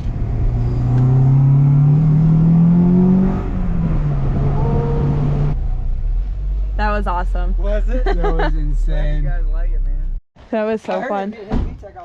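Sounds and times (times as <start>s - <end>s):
car engine accelerating hard: 0.0s - 7.0s.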